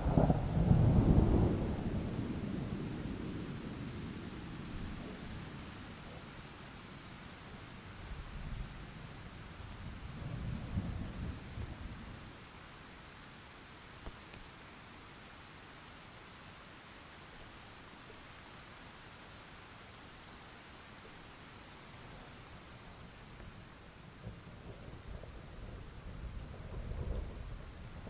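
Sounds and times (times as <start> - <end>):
thunder rolling: 0.0 - 3.2, 24.2 - 28.0
steady rain: 0.0 - 28.0.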